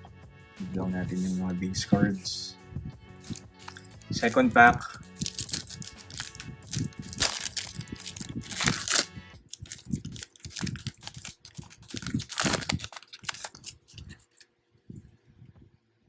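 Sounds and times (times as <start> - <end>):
card pack wrapper tearing and crinkling: 3.3 - 3.9, 5.1 - 14.4.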